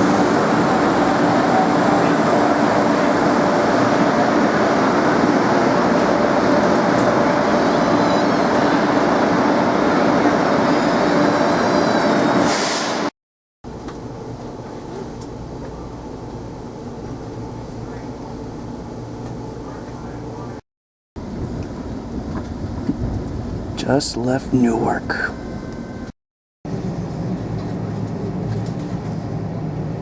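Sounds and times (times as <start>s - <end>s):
train rail rumble: 21.2s - 26.1s, 26.7s - 30.0s.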